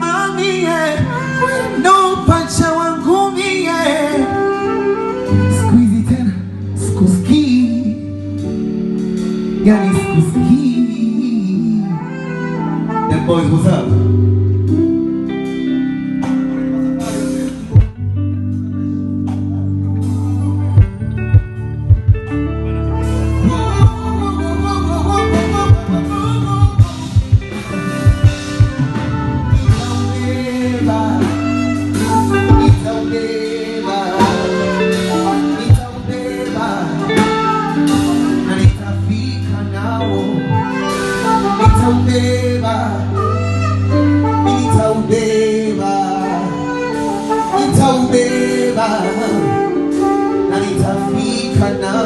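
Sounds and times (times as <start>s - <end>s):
live band playing slow instrumental: 0.0s - 52.0s
steady drum hits: 20.8s - 22.3s, 26.6s - 30.2s.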